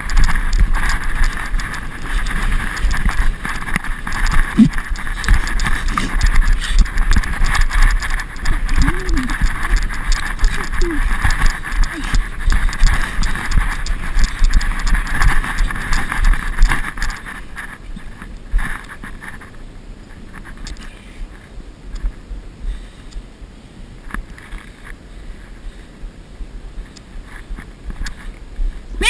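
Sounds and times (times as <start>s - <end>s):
gusty wind buffeting microphone: 0.0s - 20.6s.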